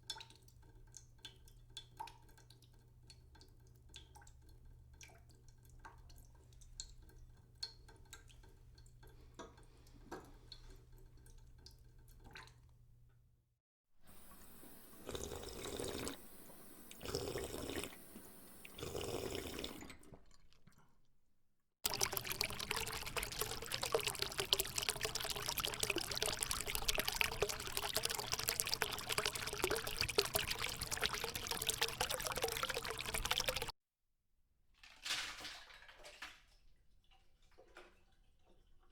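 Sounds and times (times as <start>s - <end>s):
water dripping: 0.0s - 12.9s, 21.8s - 33.7s
water pouring: 14.1s - 21.0s, 21.8s - 33.7s
stream of running water: 21.8s - 33.7s.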